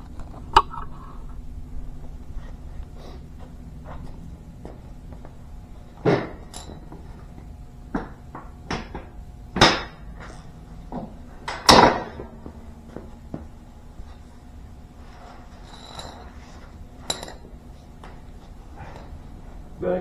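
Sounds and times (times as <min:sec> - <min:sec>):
low steady hum: 0:00.0 - 0:20.0
metal tools knocking and clanking: 0:06.0 - 0:07.0, 0:17.0 - 0:17.5.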